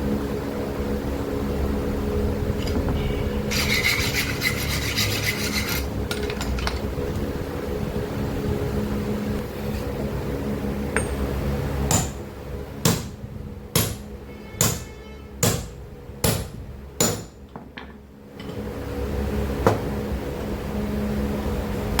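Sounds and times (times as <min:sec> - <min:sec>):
steady machine hum: 0:00.0 - 0:22.0
hammer blows on metal: 0:12.8 - 0:17.4.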